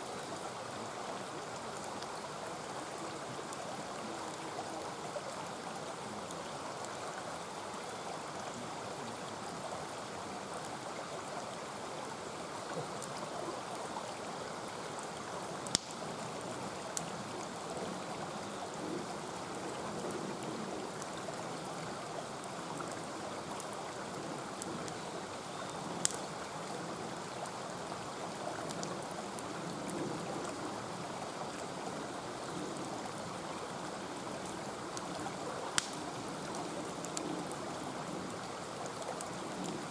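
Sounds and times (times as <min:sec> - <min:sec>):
mountain stream rushing: 0:00.0 - 0:39.9
campfire wood popping: 0:15.6 - 0:16.0, 0:26.0 - 0:26.3, 0:35.0 - 0:37.6.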